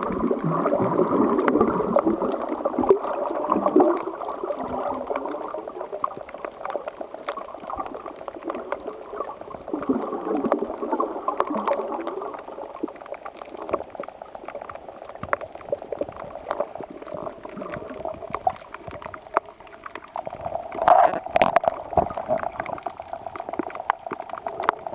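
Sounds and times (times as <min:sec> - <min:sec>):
small clicks and knocks: 0:20.7 - 0:24.9.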